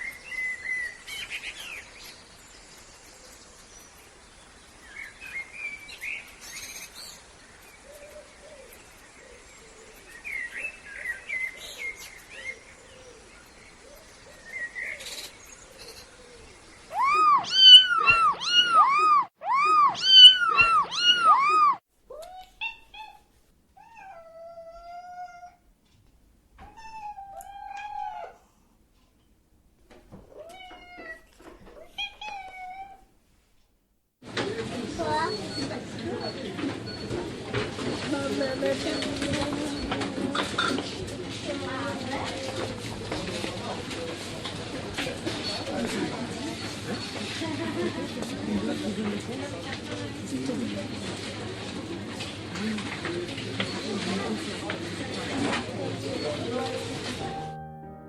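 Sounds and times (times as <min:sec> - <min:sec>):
faint chirping calls: 0:00.0 - 0:23.2
cat meowing: 0:16.9 - 0:25.6, 0:26.6 - 0:28.4, 0:30.3 - 0:33.1.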